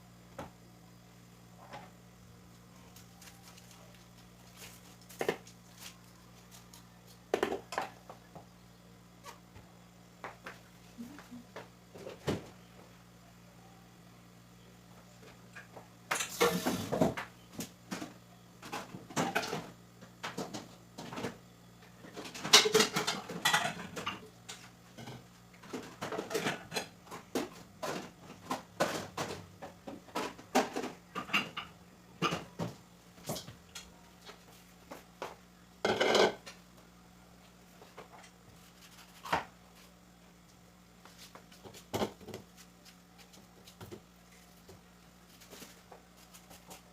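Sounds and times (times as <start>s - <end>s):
dishes and cutlery clattering: 22.4s - 24.2s.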